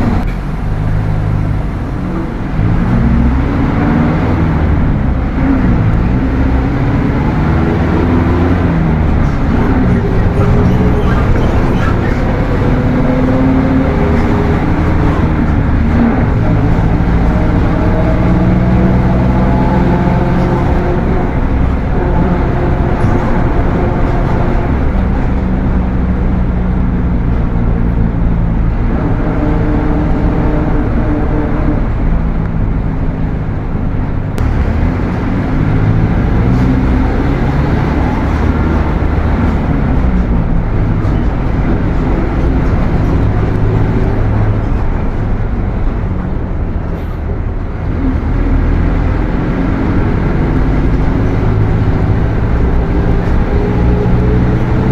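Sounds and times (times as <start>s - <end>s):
bus diesel engine accelerating: 0.0s - 54.9s
transmission growl: 1.9s - 25.5s.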